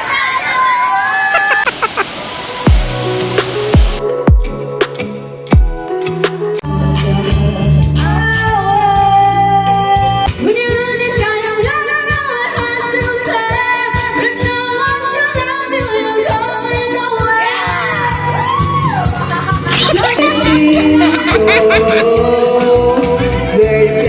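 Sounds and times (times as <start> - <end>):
pop song with woman singing: 3.6 - 18.4, 19.6 - 24.0.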